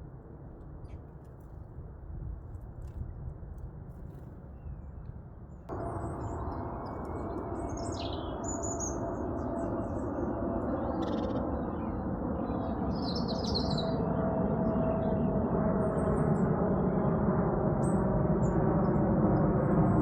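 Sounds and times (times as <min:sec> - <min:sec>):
low background rumble: 0:05.7 - 0:13.2.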